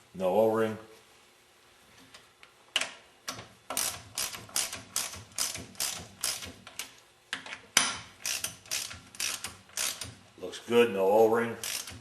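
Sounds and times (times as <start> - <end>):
socket ratchet clicking: 3.7 - 7.0, 7.8 - 10.2, 11.6 - 12.0.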